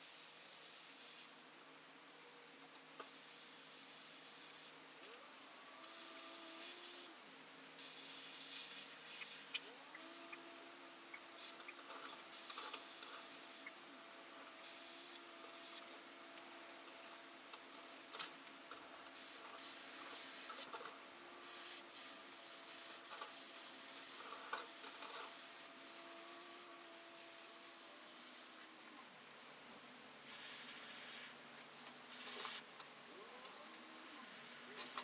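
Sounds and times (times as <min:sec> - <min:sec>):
airbrush hissing in bursts: 0:19.2 - 0:20.7, 0:21.4 - 0:28.5, 0:30.3 - 0:31.3.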